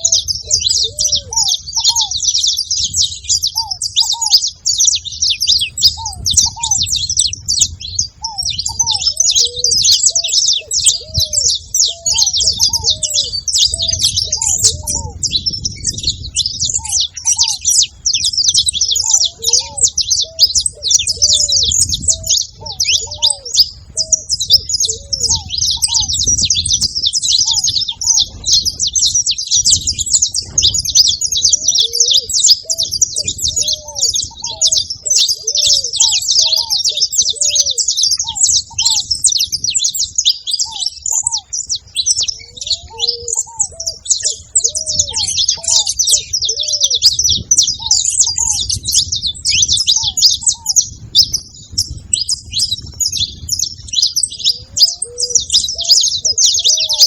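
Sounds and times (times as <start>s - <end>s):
finches chirping and singing: 0.0s - 57.0s
low curved bird notes: 0.0s - 57.0s.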